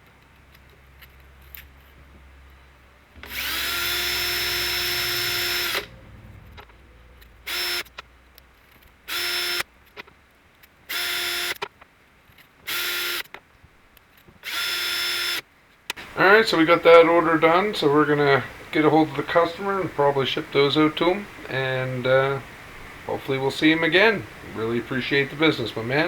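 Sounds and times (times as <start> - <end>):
electric drill spinning: 3.2 - 8.2, 8.9 - 9.7, 10.9 - 11.6, 12.6 - 13.3, 14.4 - 16.3.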